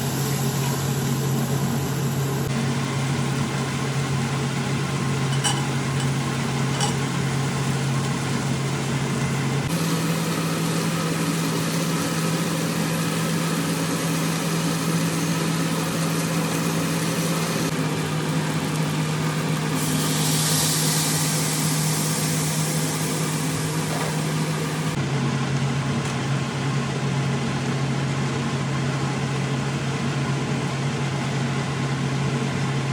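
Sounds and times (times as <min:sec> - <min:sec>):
low mechanical hum: 0:00.0 - 0:32.9
hiss: 0:19.7 - 0:24.8.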